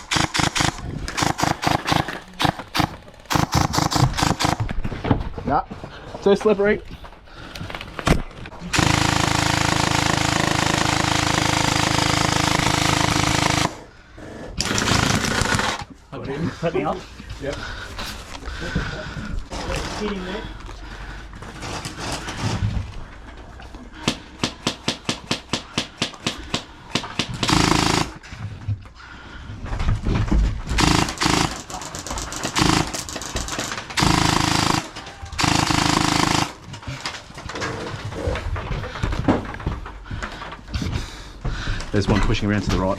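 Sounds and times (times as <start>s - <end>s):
gel blaster firing full auto: 0.0s - 4.7s, 8.7s - 13.8s, 14.6s - 15.9s, 24.6s - 28.2s, 30.7s - 36.7s.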